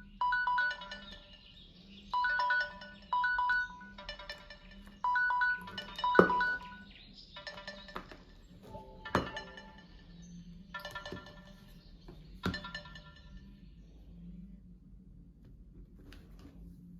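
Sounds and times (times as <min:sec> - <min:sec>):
soft ringtone phrase: 0:00.0 - 0:01.4, 0:02.2 - 0:06.9
loud alarm beeping: 0:00.0 - 0:11.7.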